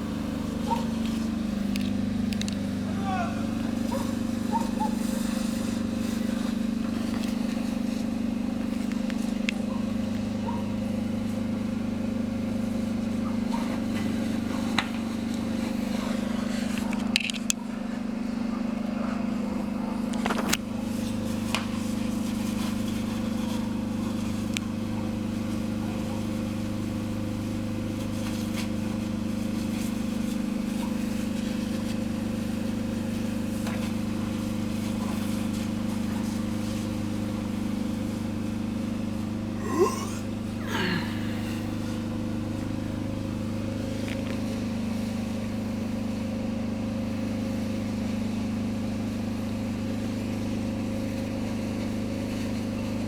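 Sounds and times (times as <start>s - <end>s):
low engine-like hum: 0.0s - 27.0s, 28.0s - 45.9s.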